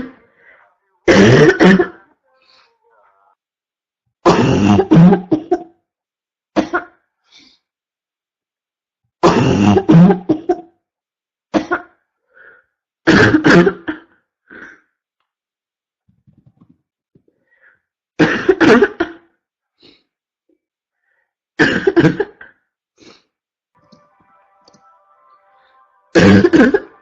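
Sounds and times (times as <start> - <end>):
person coughing: 1.0 - 2.1, 4.2 - 5.8, 9.2 - 10.7, 13.1 - 14.8, 18.2 - 19.4, 21.6 - 22.6, 26.2 - 26.9.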